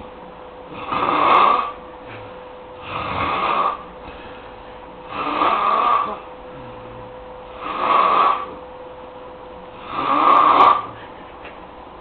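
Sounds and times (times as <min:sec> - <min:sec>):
snoring: 0:00.7 - 0:03.9, 0:05.1 - 0:08.6, 0:09.7 - 0:11.0.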